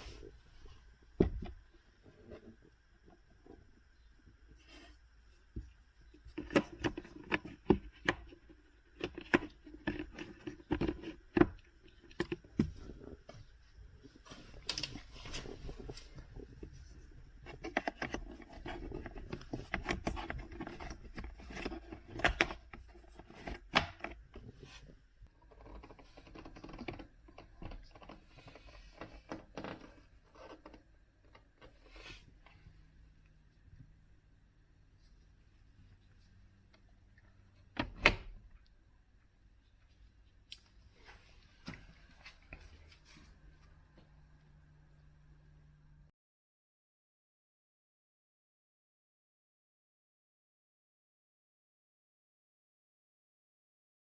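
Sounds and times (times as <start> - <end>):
rustling and scraping: 0.0 - 34.2, 39.7 - 44.3.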